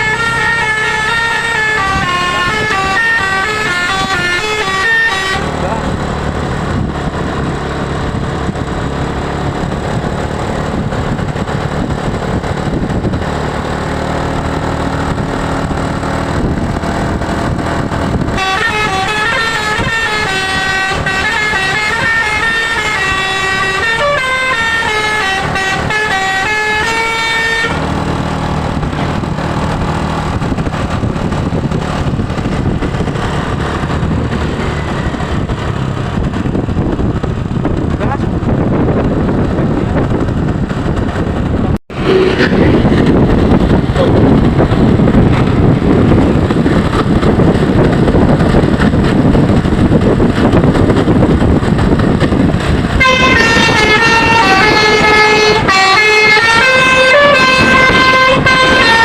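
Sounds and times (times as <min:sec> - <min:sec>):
musical bus horn melody: 0:00.0 - 0:05.9, 0:18.3 - 0:27.9, 0:52.9 - 0:59.0
low engine rumble: 0:00.0 - 0:59.0.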